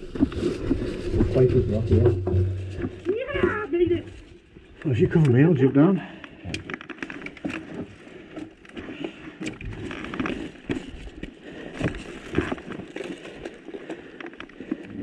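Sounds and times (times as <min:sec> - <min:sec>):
footsteps: 0:00.0 - 0:04.8.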